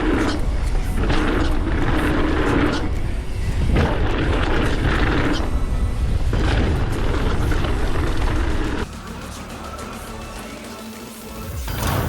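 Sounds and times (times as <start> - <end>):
wind buffeting microphone: 0.0 - 8.8
tyre rumble: 0.0 - 8.9
background music: 0.0 - 12.0.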